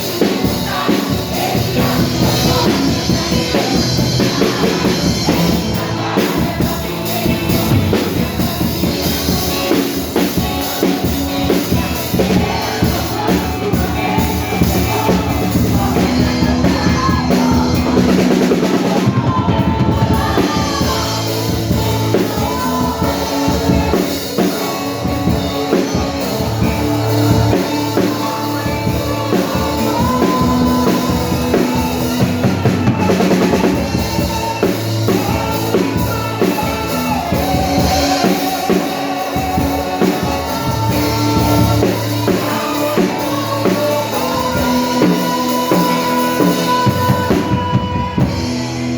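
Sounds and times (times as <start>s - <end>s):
drum kit beat: 0.0s - 48.9s
live rock band playing: 0.0s - 48.9s.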